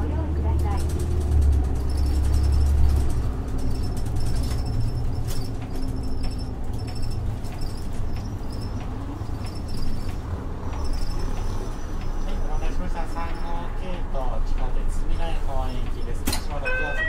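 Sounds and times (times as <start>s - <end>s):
bus engine drone: 0.0s - 17.0s.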